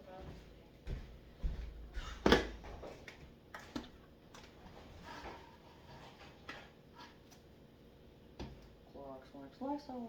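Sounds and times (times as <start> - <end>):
household items knocking and clattering: 2.0 - 3.0.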